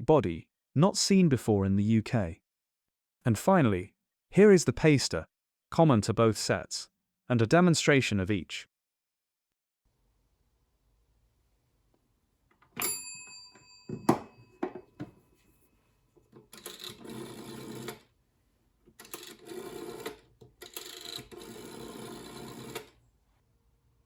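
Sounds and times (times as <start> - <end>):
telephone bell ding: 12.8 - 15.0
knock: 13.9 - 15.1
rotary dial whirring back: 16.5 - 18.0, 19.0 - 23.0.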